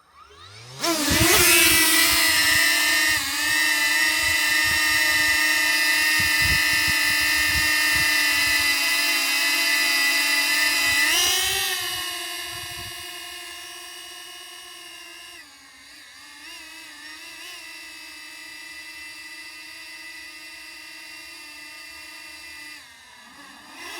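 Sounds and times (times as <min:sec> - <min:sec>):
drone propellers whining: 0:00.0 - 0:18.0
low rumbling: 0:01.0 - 0:08.8.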